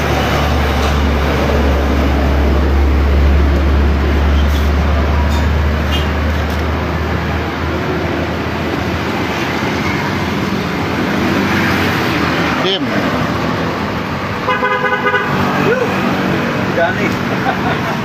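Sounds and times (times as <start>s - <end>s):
vehicle engine rumble: 0.0s - 14.5s.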